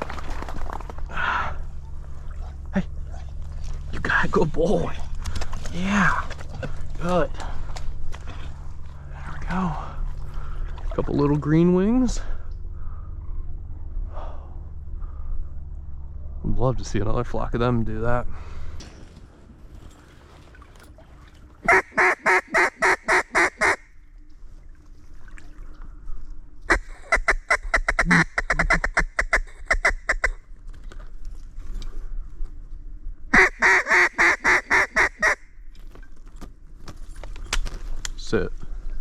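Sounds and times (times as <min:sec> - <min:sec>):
duck call quacks: 0:21.7 - 0:23.9, 0:26.7 - 0:30.4, 0:33.3 - 0:35.5.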